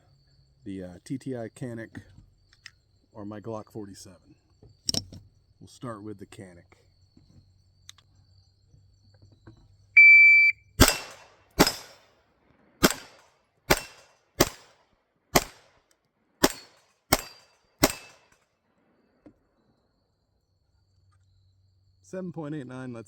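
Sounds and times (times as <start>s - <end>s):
shot timer beep: 10.0s - 10.6s
pistol shots: 10.8s - 12.1s, 12.8s - 15.8s, 16.4s - 18.4s.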